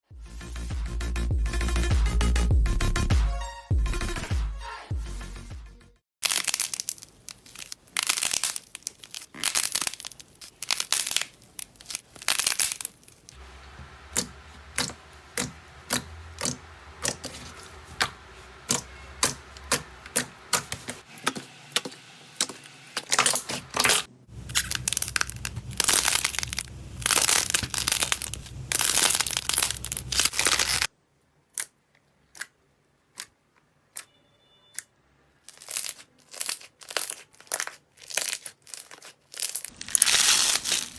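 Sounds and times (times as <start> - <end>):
slime popping and crackling: 6.2 - 23.6, 24.4 - 30.9, 35.5 - 40.9.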